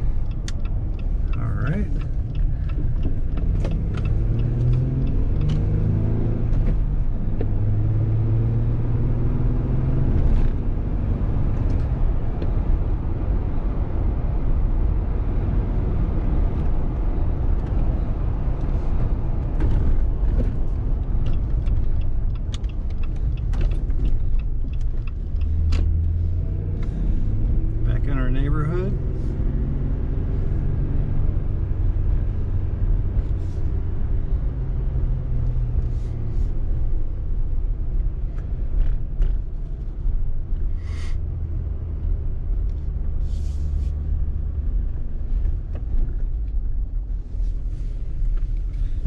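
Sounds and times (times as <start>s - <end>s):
car engine: 0.0s - 49.0s.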